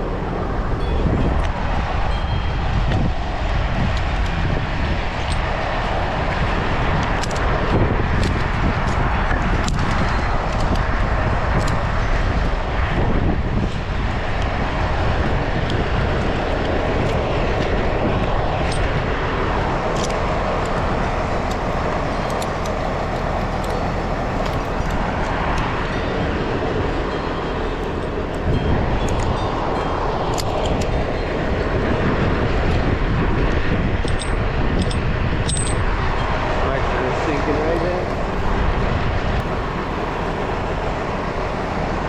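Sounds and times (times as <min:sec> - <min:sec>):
wind buffeting microphone: 0:00.0 - 0:42.0
handling clicks: 0:19.9 - 0:25.7, 0:30.3 - 0:31.0, 0:34.0 - 0:35.8.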